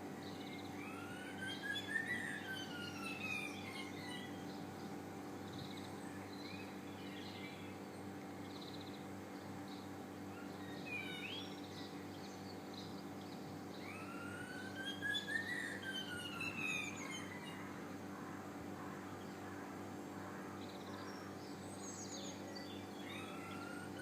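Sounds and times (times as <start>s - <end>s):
bird chirps: 0.3s - 4.6s, 10.4s - 17.7s.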